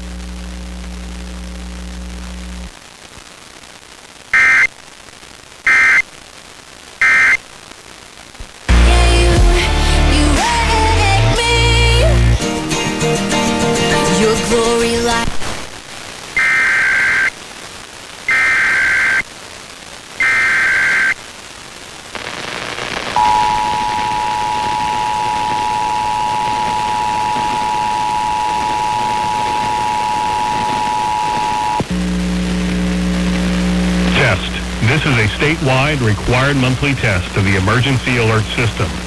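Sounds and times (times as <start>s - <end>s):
low steady hum: 0.0s - 2.7s, 23.2s - 39.0s
radio hiss: 0.0s - 12.3s, 13.8s - 39.0s
two-tone attention signal: 23.2s - 31.8s
warbling digital data tones: 23.2s - 31.8s.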